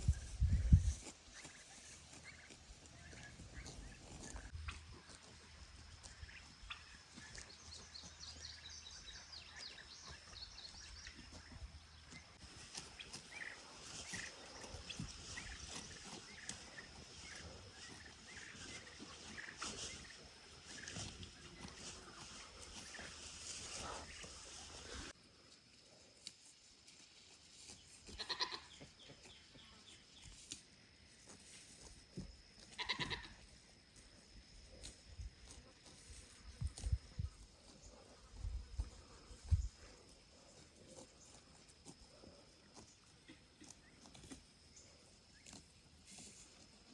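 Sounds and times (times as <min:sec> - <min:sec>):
small birds chirping: 0:00.0 - 0:25.2, 0:25.8 - 0:46.9
goat bleating: 0:28.0 - 0:28.8, 0:32.6 - 0:33.4.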